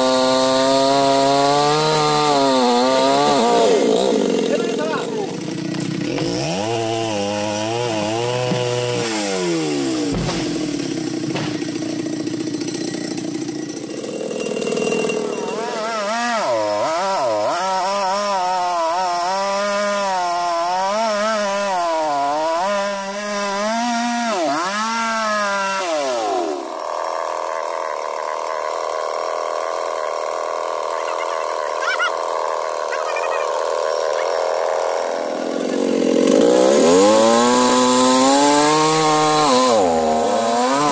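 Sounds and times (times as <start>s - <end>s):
chainsaw engine revving: 0.0s - 40.9s.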